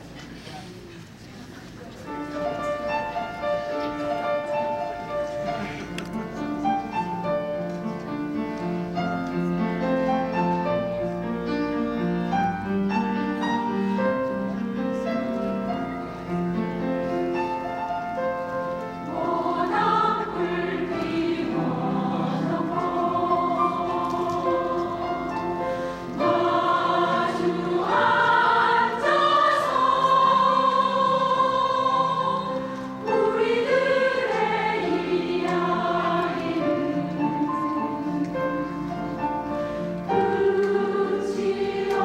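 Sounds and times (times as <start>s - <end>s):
piano accompaniment: 2.1s - 42.0s
women's choir singing: 19.0s - 42.0s.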